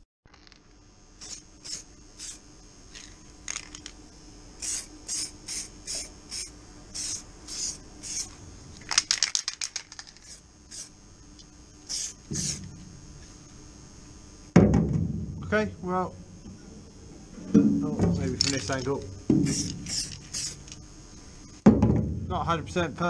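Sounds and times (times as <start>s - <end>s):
spray can rattling: 2.9s - 4.0s, 7.0s - 10.9s
aerosol paint can spraying: 4.6s - 8.4s, 9.6s - 10.9s, 11.9s - 12.7s, 19.4s - 20.8s.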